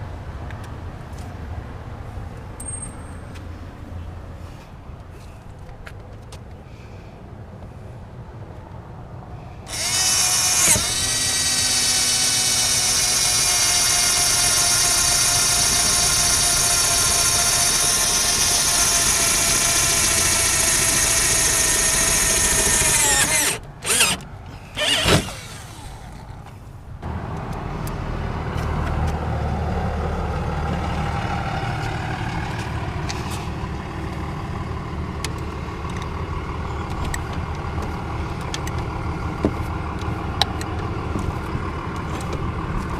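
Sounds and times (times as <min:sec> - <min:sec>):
low engine rumble: 0:03.6 - 0:42.9
electric drill motor whining: 0:09.7 - 0:24.2, 0:24.8 - 0:26.3.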